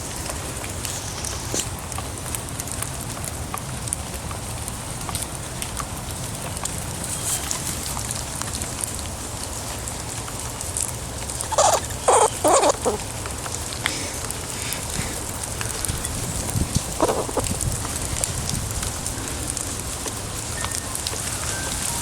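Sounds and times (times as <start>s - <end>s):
rain pattering: 0.0s - 22.0s
squirrel squeaking: 11.4s - 13.0s, 17.0s - 17.5s.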